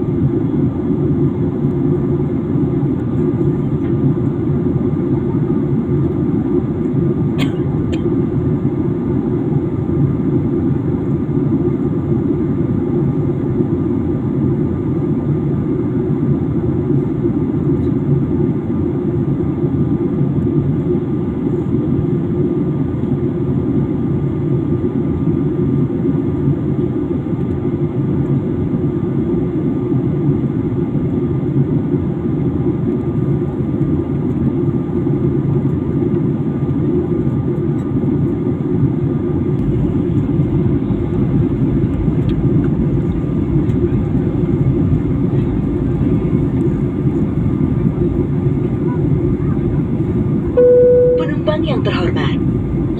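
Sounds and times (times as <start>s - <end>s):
airliner cabin engine rush: 0.0s - 52.9s
faint steady tone: 50.6s - 51.6s.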